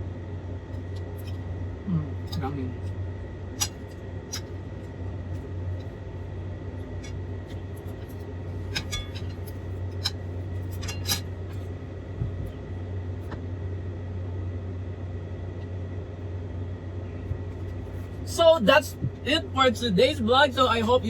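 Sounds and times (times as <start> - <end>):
steady low hum: 0.0 - 21.0
cutlery clinking against a plate: 3.6 - 4.5, 7.0 - 11.6.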